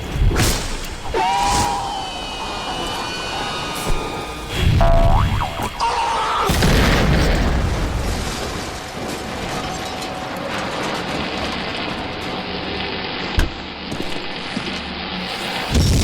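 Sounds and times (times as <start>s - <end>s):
rushing rumble: 0.0s - 16.0s
explosion boom: 1.4s - 10.1s.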